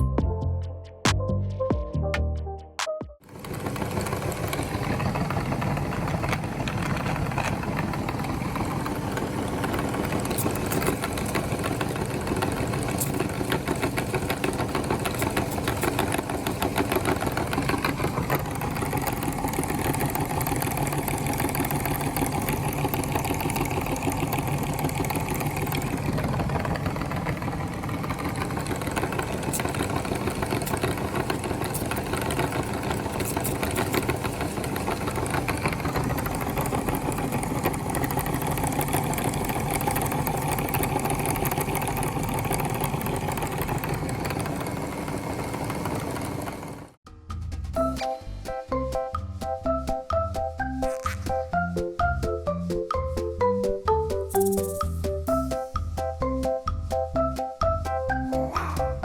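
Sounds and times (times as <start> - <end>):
electric meat grinder running: 3.3 - 47.0.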